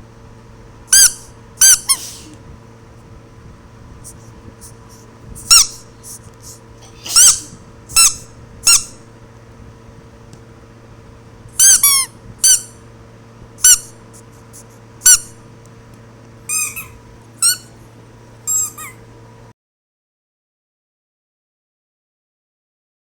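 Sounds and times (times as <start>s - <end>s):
steady low hum: 0.0s - 19.5s
short high-pitched squeaks: 16.5s - 17.7s, 18.5s - 19.0s.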